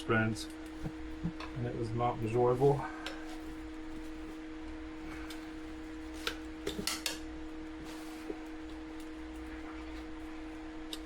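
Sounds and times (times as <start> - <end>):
steady hum: 0.0 - 11.0.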